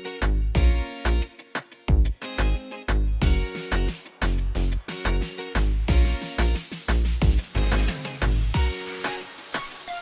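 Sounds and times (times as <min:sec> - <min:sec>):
upbeat background music: 0:02.9 - 0:10.0.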